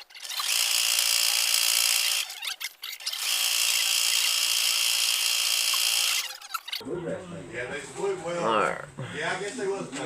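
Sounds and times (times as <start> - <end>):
sewing machine stitching: 0.0 - 6.4.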